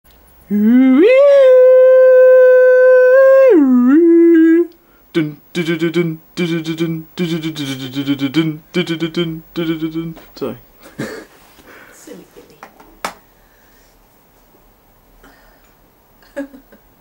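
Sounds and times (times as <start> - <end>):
person singing sliding notes: 0.5 - 10.3.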